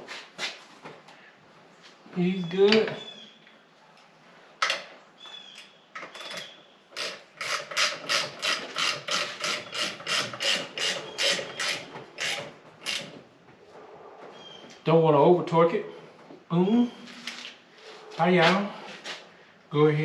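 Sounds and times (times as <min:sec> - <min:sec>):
ratchet wrench clicking: 0:07.0 - 0:13.1.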